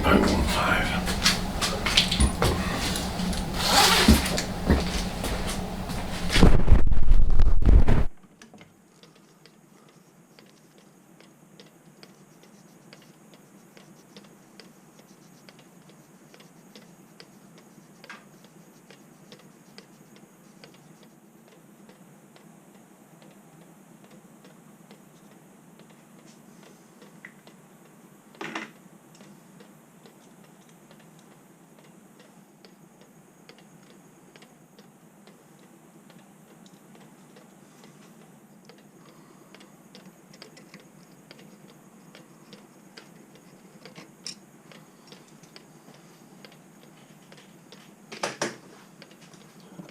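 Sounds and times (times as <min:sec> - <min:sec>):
faint light ticking and clicking: 0:09.0 - 0:28.4, 0:29.1 - 0:48.0.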